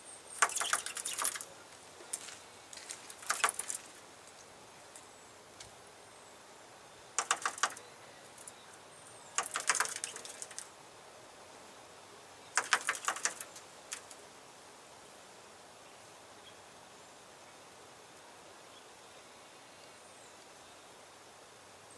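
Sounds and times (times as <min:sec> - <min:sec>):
bird pecking rapid taps: 0:00.4 - 0:01.5, 0:03.1 - 0:03.9, 0:07.2 - 0:07.8, 0:09.4 - 0:10.7, 0:12.6 - 0:14.2.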